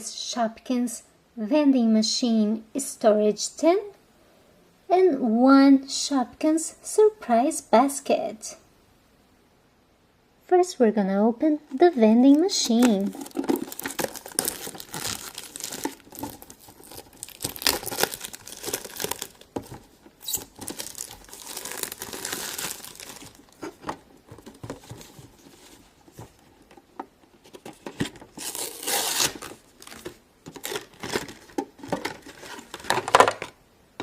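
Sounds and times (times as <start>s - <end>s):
packaging crinkling and tearing: 11.7s - 26.7s, 27.4s - 33.4s.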